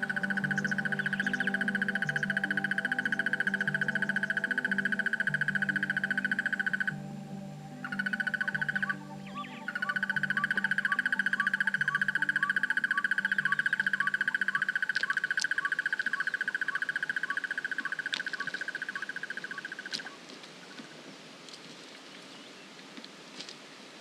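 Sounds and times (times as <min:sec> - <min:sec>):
animal high pulsing trill: 0:07.8 - 0:18.0
faint repeating chirp: 0:07.8 - 0:19.8
scattered faint ticks: 0:09.7 - 0:21.7.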